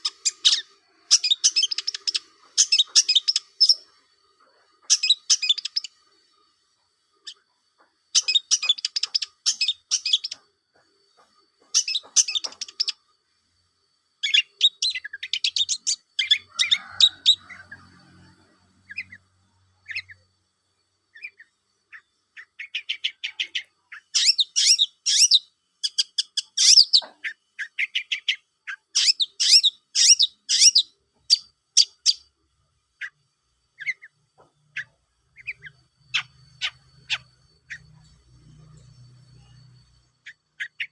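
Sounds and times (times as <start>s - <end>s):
bird scratchy chattering trills: 0.0s - 4.0s, 4.7s - 6.0s, 8.1s - 10.4s, 11.2s - 13.1s, 34.7s - 39.5s.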